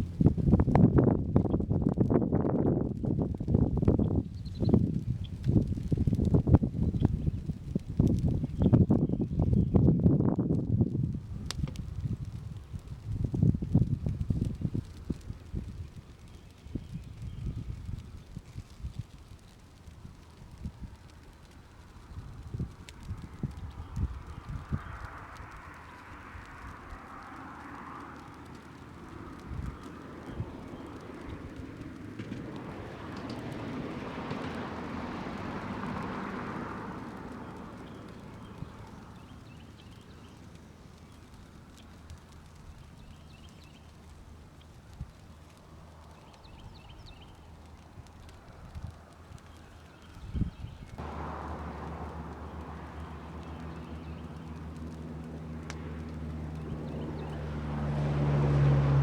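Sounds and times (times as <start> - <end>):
engine running: 0.0 - 2.0, 51.0 - 59.0
vehicle passing: 21.9 - 42.8, 51.0 - 59.0.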